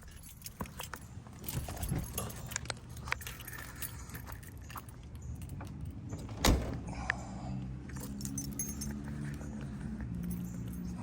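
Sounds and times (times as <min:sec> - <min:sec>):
light jingling: 0:00.0 - 0:06.7, 0:07.9 - 0:11.0.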